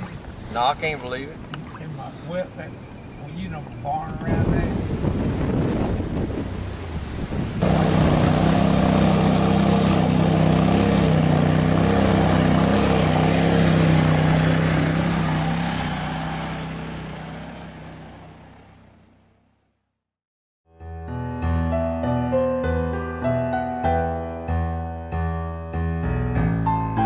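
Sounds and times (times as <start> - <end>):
engine running steadily: 6.4 - 19.5.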